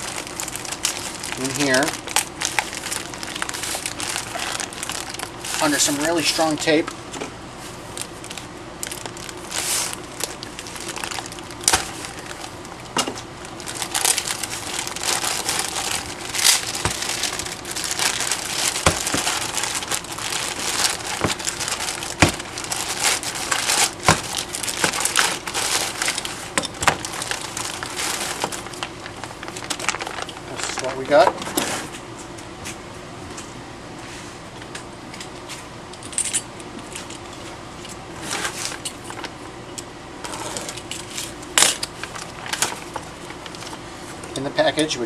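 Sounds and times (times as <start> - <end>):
wrapping crinkling: 0.0 - 7.0, 7.6 - 31.3, 40.2 - 44.4.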